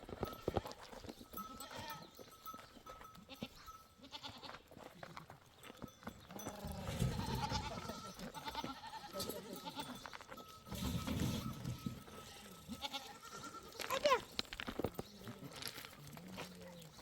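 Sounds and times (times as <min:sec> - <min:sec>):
goats bleating: 0:01.6 - 0:02.2, 0:03.3 - 0:04.6, 0:06.3 - 0:10.0, 0:12.2 - 0:14.3.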